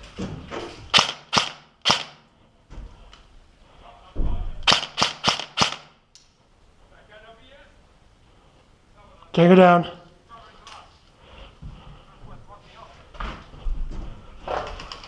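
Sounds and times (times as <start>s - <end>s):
airsoft rifle shots: 0.9s - 2.2s, 4.6s - 6.0s.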